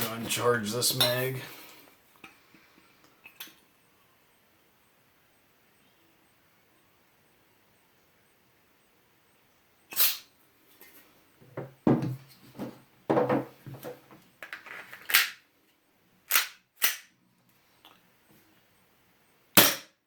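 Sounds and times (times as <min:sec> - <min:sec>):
handling knocks and rattles: 0:11.5 - 0:15.2
airsoft pistol shots: 0:16.3 - 0:17.1, 0:19.6 - 0:20.0.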